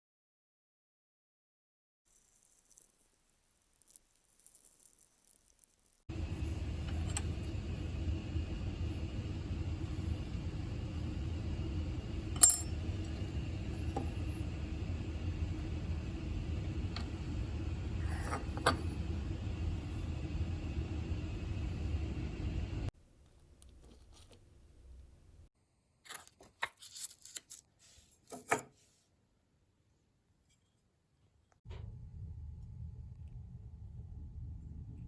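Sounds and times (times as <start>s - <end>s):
steady low hum: 6.1s - 23.6s, 31.7s - 35.0s.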